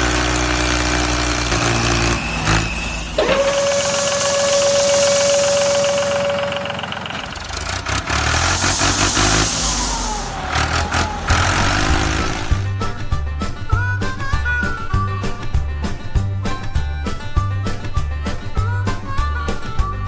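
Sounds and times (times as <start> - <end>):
small engine running: 0.0 - 12.8
high whine: 2.2 - 12.8
hissing bursts: 2.3 - 12.7.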